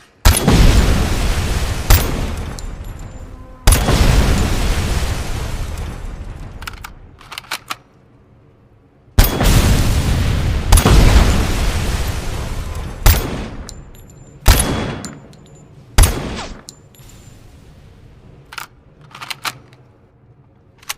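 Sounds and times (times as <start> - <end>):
heavy gun blasts: 0.2 - 7.2, 9.2 - 13.7
small clicks: 6.5 - 8.0, 18.5 - 20.9
sharp gunshots: 16.0 - 16.6.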